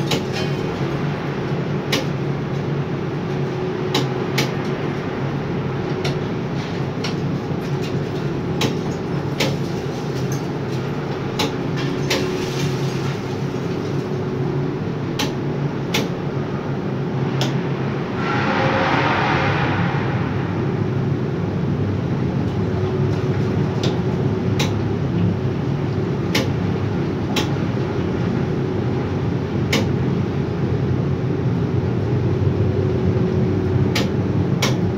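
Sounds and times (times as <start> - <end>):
overhead crane machinery drone: 0.0 - 34.9
sharp clicks and knocks: 15.2 - 16.1, 33.9 - 34.8.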